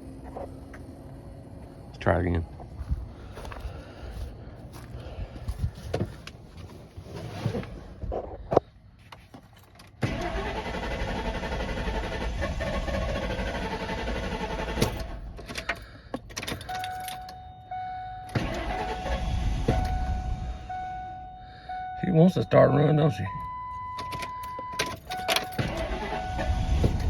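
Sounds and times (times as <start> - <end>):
car engine starting and running: 0.0 - 6.7, 9.8 - 27.0
chime tone: 19.8 - 23.7.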